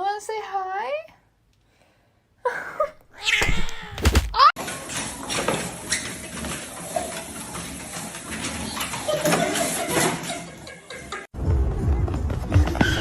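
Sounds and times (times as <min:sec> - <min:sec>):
cat crying: 0:03.1 - 0:04.0.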